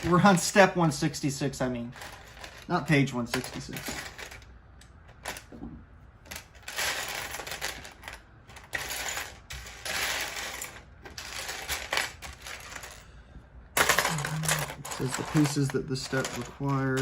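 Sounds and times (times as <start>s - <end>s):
plastic pieces clattering: 1.9s - 4.5s, 6.2s - 13.1s, 13.8s - 17.0s.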